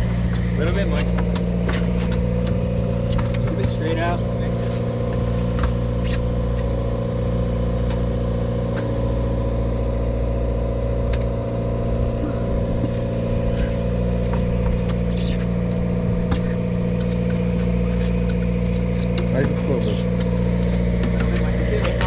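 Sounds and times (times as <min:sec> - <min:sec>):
boat engine droning hum: 0:00.0 - 0:22.0.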